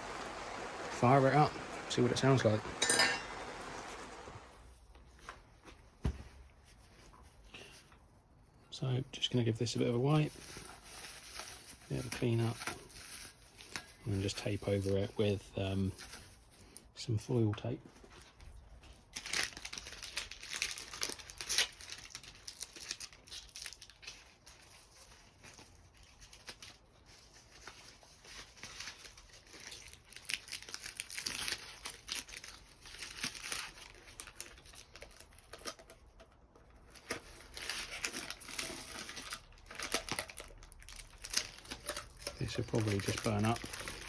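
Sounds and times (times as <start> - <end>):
foil tape tearing and crinkling: 9.6 - 16.5, 18.9 - 44.0.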